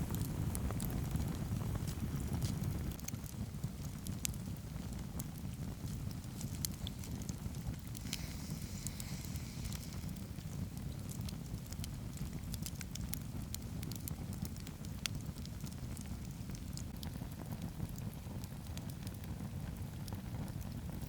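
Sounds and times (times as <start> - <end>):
campfire crackling and popping: 0.0 - 21.0
short hiss: 8.0 - 10.2.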